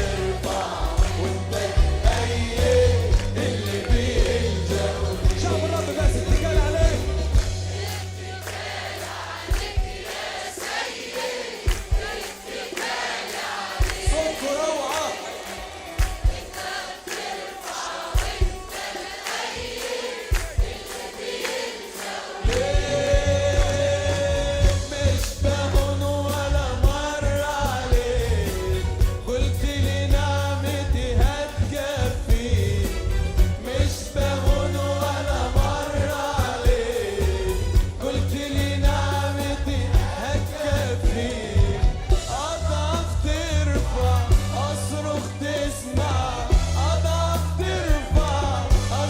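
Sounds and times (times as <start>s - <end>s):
heavy bass: 0.0s - 9.8s, 22.5s - 49.0s
group singing worship song: 0.0s - 49.0s
instrumental backing with beat: 0.0s - 49.0s.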